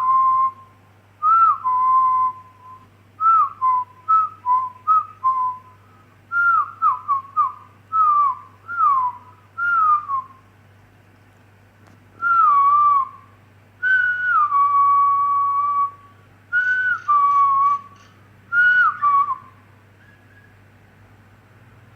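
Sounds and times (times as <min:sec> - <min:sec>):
person whistling: 0:00.0 - 0:10.4, 0:12.2 - 0:20.6
myna bird whistling: 0:16.6 - 0:20.7.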